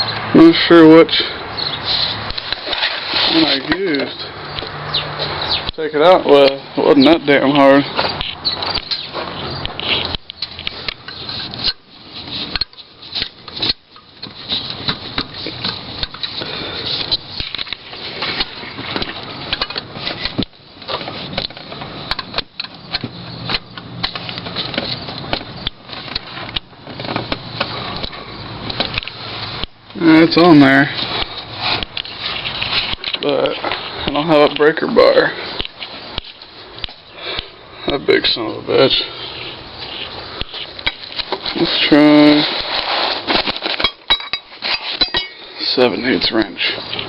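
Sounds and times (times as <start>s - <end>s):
handling noise: 1.6s - 47.0s
hand tools clinking on metal: 43.7s - 47.0s.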